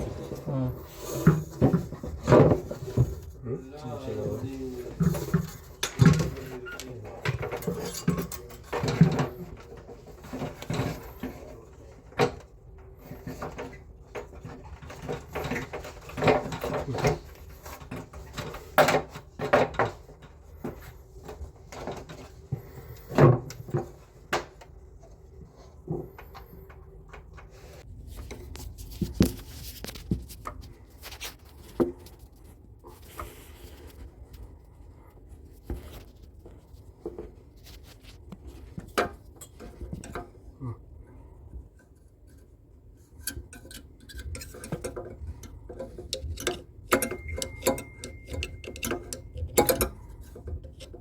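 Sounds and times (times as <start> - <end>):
hard parts and tools clattering: 4.2 - 24.6, 43.0 - 51.0.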